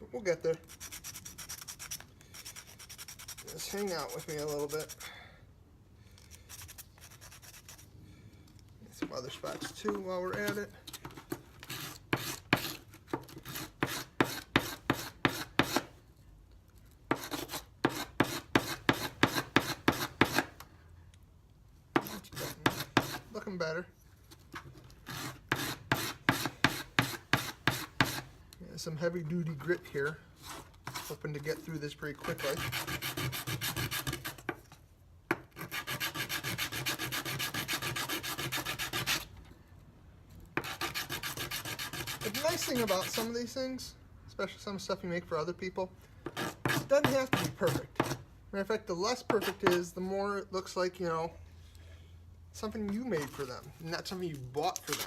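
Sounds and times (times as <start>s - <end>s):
sandpaper rubbing wood: 0.6s - 5.0s, 6.5s - 7.9s, 22.0s - 23.3s, 32.2s - 34.5s, 35.6s - 39.3s, 40.6s - 43.4s.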